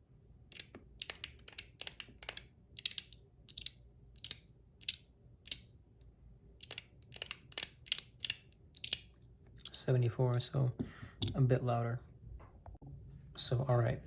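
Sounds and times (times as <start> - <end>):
metal fidget clicker clicking: 0.5 - 5.6, 6.6 - 9.8.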